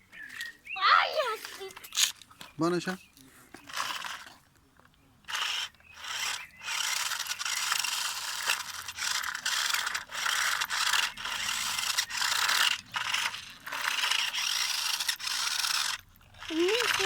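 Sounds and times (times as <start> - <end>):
toy car wheels scraping and rattling: 1.1 - 2.4, 3.2 - 4.5, 5.2 - 17.0.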